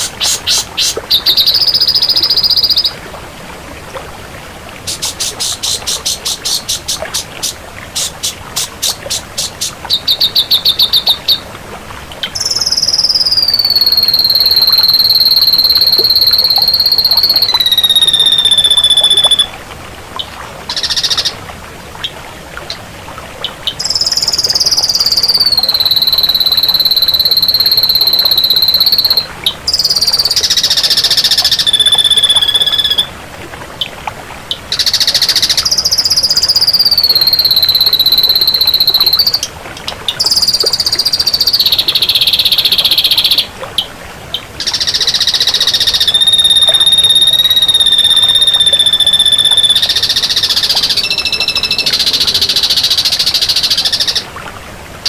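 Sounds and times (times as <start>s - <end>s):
bird clicking notes: 0.0s - 2.8s, 4.9s - 11.3s
bird harsh rasping notes: 0.0s - 2.8s, 4.8s - 11.4s
bird whistles sliding down: 0.0s - 2.9s, 4.8s - 11.4s, 12.4s - 19.5s, 23.9s - 33.1s, 34.8s - 39.4s, 44.6s - 54.2s.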